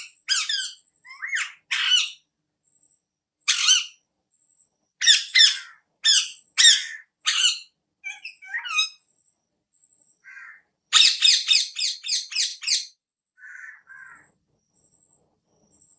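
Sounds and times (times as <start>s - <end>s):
parrot squawking: 0.3s - 2.2s, 3.5s - 4.0s, 5.0s - 9.0s, 10.3s - 14.1s.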